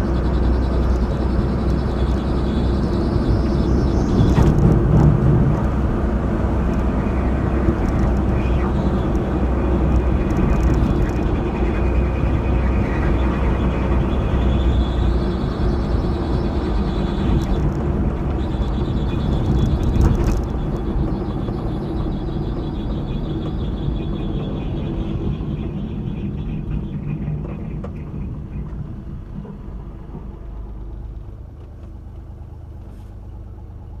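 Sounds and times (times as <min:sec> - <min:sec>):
engine rumble: 0:00.0 - 0:34.0
high engine whine: 0:00.0 - 0:34.0.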